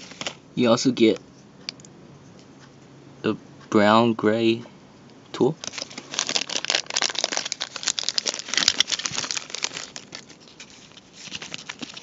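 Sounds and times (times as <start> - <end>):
paper and plastic crinkling: 5.6 - 12.0.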